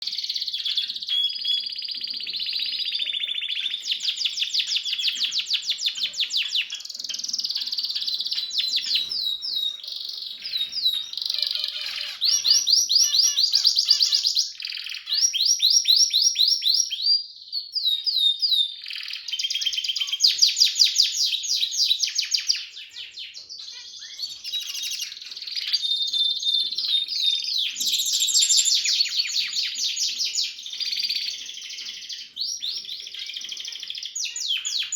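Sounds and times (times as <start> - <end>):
canary singing trills: 0.0 - 34.9.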